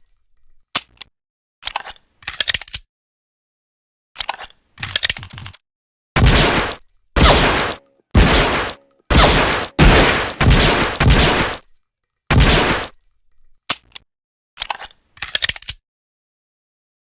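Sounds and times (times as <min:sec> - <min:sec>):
pistol shots: 0:06.2 - 0:11.7, 0:12.3 - 0:12.9
metallic clicks and clatter: 0:06.6 - 0:14.0, 0:14.6 - 0:15.8.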